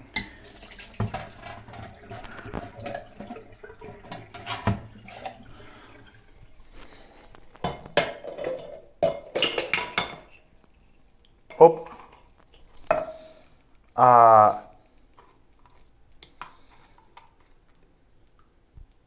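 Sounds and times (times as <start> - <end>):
plates and cutlery clinking: 7.5 - 10.4.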